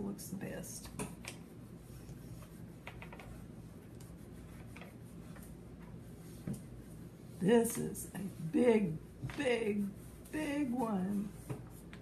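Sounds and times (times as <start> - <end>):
chalk tapping on paper: 2.2 - 5.5, 11.2 - 12.0.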